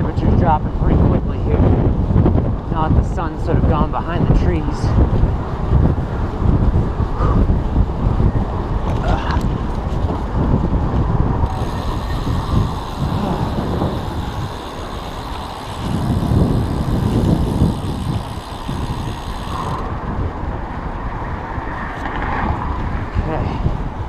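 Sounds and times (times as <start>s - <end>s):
wind rumble on microphone: 0.0s - 24.0s
bicycle freewheel clicking: 11.3s - 20.0s.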